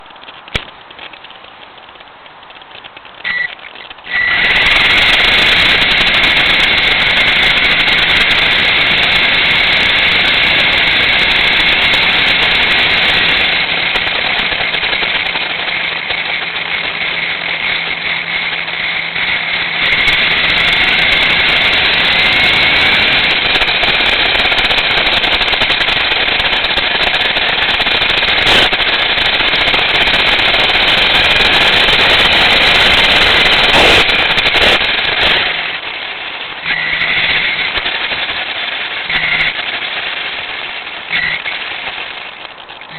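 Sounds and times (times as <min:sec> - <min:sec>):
toy car motor whining: 0:03.2 - 0:42.9.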